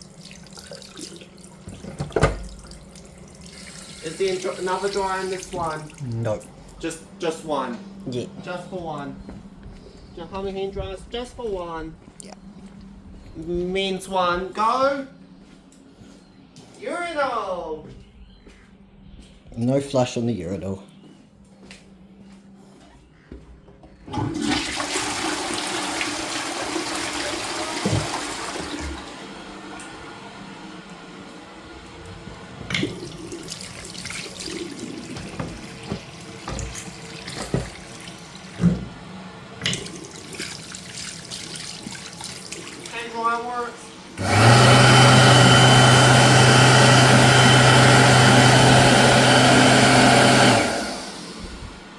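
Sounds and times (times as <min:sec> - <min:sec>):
toilet flushing: 0:00.0 - 0:06.1, 0:24.1 - 0:30.4, 0:32.3 - 0:51.6
electric hand dryer running: 0:24.4 - 0:40.4, 0:42.1 - 0:51.9.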